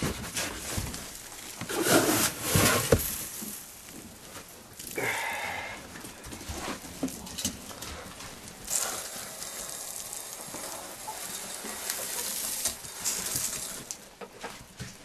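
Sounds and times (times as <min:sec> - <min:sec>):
dry feed pouring: 0:01.2 - 0:05.2, 0:08.0 - 0:14.5.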